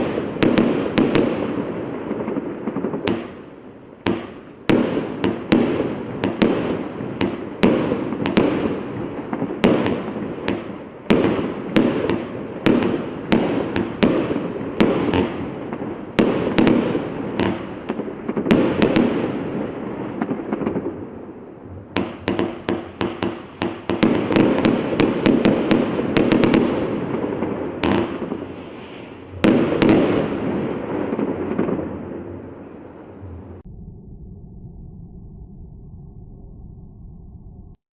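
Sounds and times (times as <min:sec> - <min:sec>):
crackling firework bursts: 0:00.0 - 0:33.6
firework launch bangs: 0:22.0 - 0:32.1.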